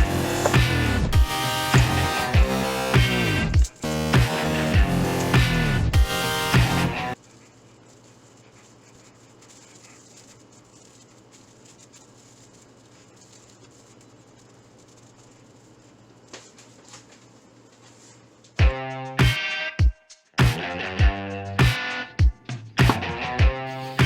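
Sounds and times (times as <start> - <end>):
music: 0.0 - 7.2, 18.6 - 24.0
steady low hum: 0.0 - 18.6
faint hiss: 7.2 - 18.5.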